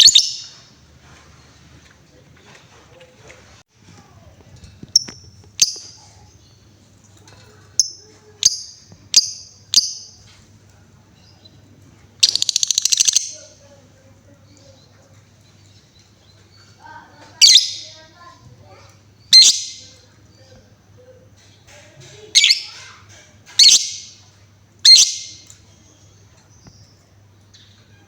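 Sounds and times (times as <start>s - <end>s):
bird high chirps: 0.0s - 0.7s, 12.2s - 13.5s, 17.2s - 18.1s, 19.2s - 20.5s, 22.4s - 22.9s, 23.6s - 25.6s
bird rapid pulsed chatter: 12.2s - 13.6s, 23.6s - 25.5s.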